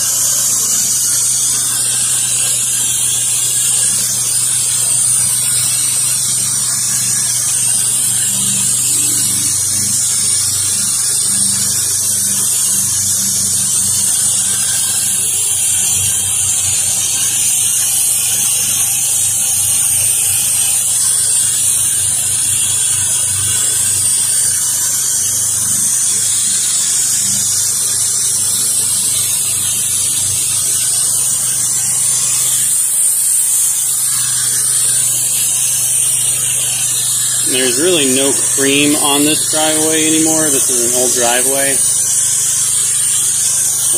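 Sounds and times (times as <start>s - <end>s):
high pressure water spraying: 0.0s - 43.9s
pressure washer engine hum: 0.0s - 43.9s.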